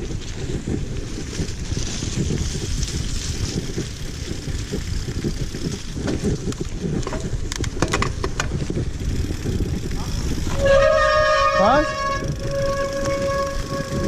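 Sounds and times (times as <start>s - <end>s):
mountain bike rolling over rough ground: 0.0s - 14.0s
wind buffeting microphone: 0.0s - 14.0s
sharp clicks or rattles: 6.0s - 8.7s.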